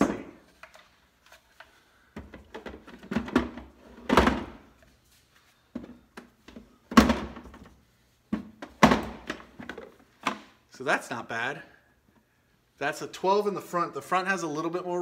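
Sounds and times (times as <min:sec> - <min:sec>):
battery packs thunking into plastic case: 0:08.3 - 0:10.5.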